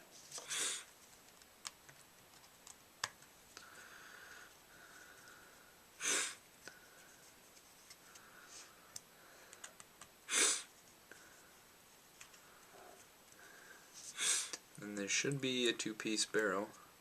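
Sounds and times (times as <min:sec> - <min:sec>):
person sniffing: 0:00.3 - 0:00.9, 0:06.0 - 0:07.1, 0:10.3 - 0:11.4, 0:12.7 - 0:14.6
small parts clicking and tapping: 0:08.9 - 0:10.1.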